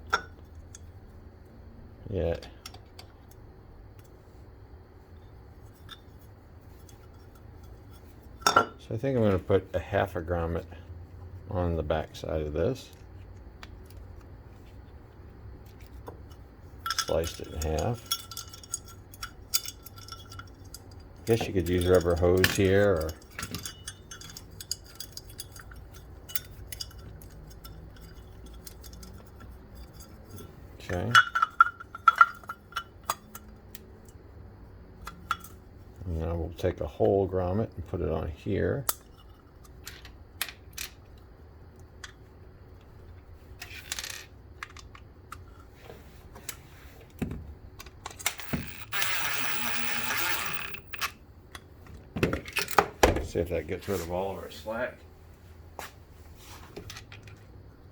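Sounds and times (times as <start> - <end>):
small parts clicking and clinking: 15.6 - 33.8, 47.8 - 51.7.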